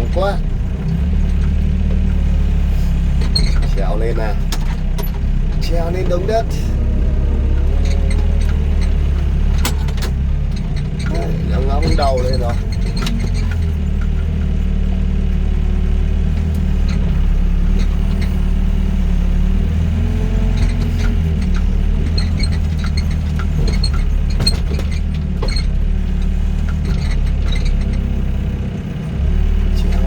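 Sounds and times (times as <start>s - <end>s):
excavator diesel engine running: 0.0s - 30.0s.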